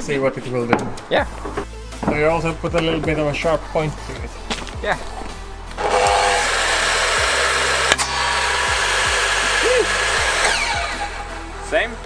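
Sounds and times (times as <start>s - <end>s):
table saw motor running: 3.3s - 12.0s.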